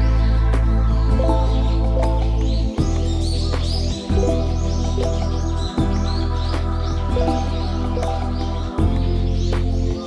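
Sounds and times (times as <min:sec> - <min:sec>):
calm background music: 0:00.0 - 0:10.0
small birds chirping: 0:00.0 - 0:10.0.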